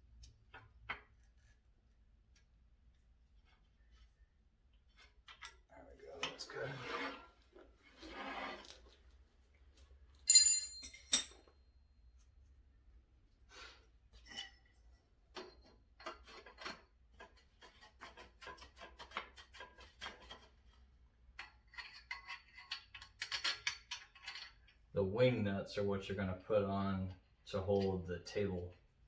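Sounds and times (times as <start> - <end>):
metal parts clinking and rattling: 10.3 - 11.4
sharp ringing metallic clink: 10.3 - 11.4.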